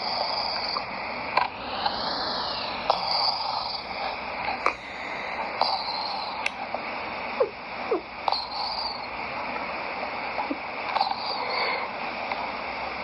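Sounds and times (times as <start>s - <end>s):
cat snoring: 0.0s - 6.6s, 7.4s - 9.2s, 10.4s - 12.0s.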